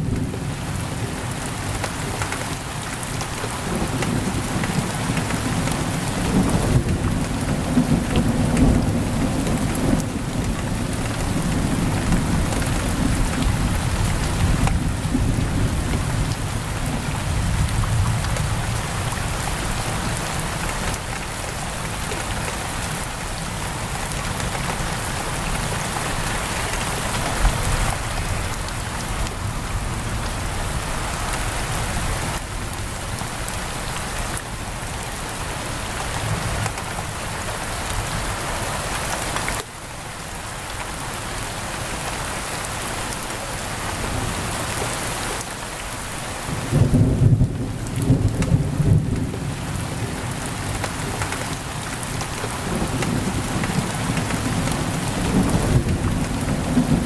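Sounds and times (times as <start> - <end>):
heavy rain on a window: 0.0 - 57.0
low thunder rumble: 52.5 - 57.0.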